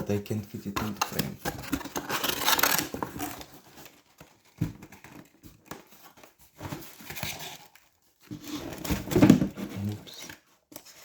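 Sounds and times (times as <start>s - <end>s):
packaging crinkling and rustling: 0.6s - 11.0s.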